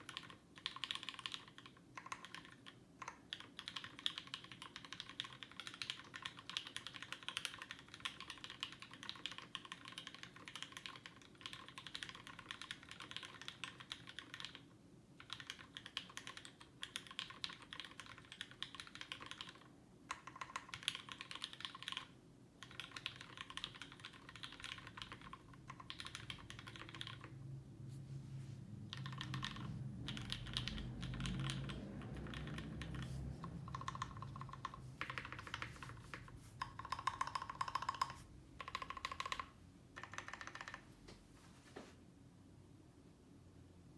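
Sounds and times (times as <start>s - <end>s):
mechanical keyboard typing: 0.0s - 27.5s, 28.9s - 40.9s
low rumble: 27.1s - 36.0s.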